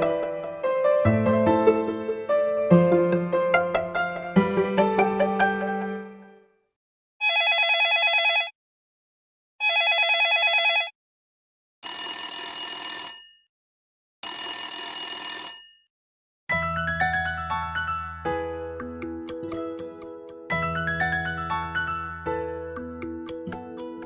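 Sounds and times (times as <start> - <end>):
phone ringtone rings: 7.2 - 8.5, 9.6 - 10.9, 11.8 - 13.4, 14.2 - 15.8
chiming melody: 18.8 - 22.2.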